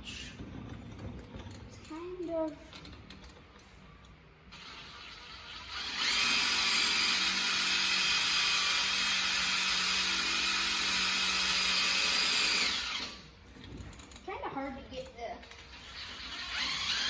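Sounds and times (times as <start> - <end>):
power drill grinding rust off steel: 4.5 - 13.3, 15.7 - 17.0.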